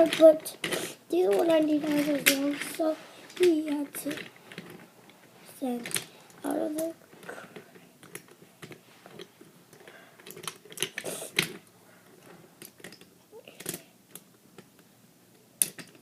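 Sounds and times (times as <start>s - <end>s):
wooden toy train pieces clicking: 0.0s - 4.8s, 5.8s - 11.6s, 15.6s - 16.0s.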